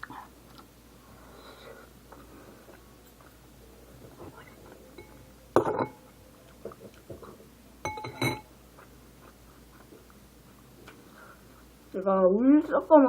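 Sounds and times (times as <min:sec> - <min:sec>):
clink on tableware: 0:05.0 - 0:06.0, 0:07.8 - 0:08.5.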